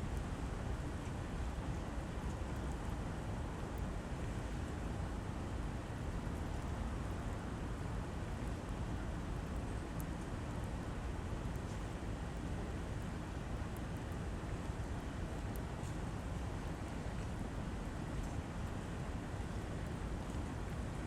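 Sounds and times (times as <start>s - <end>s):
steady rain hiss: 0.0s - 21.0s.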